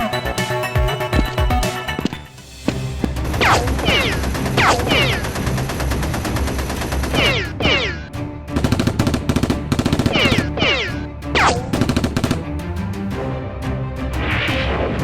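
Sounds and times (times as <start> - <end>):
background music: 0.0 - 15.0
rapid gunfire-like shots: 3.2 - 12.6.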